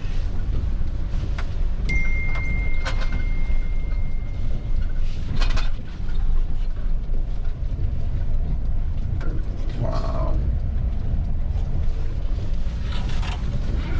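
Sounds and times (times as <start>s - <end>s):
road noise: 0.0s - 13.9s
truck engine rumble: 0.0s - 13.9s
thin high tone: 1.9s - 4.8s.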